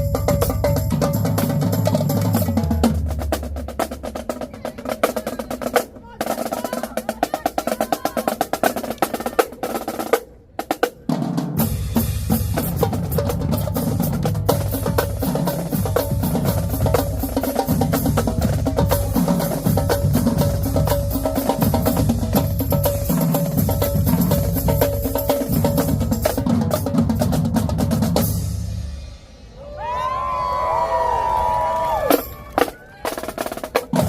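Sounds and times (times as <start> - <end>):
marching drumline: 0.0 - 29.2, 31.0 - 34.0
bass drums: 11.4 - 29.2.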